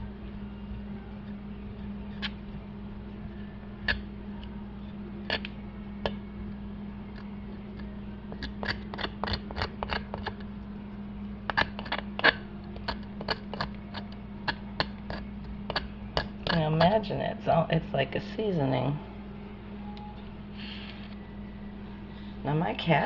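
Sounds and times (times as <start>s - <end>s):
steady low hum: 0.0s - 23.0s
knife scraping raw meat: 1.8s - 2.5s, 8.3s - 10.4s, 11.5s - 16.9s.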